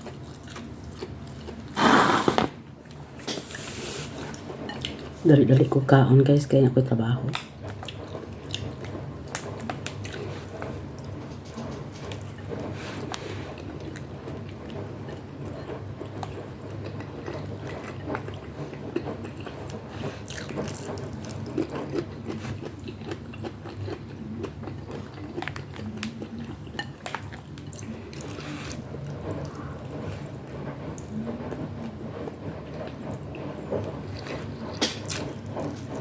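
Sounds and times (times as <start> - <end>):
chewing and biting: 7.6 - 30.4, 32.4 - 36.0.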